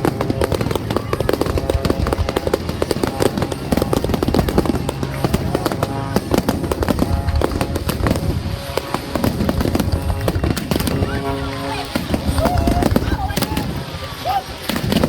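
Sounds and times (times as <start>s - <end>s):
fireworks crackling: 0.0s - 15.0s
music playing: 0.0s - 15.0s.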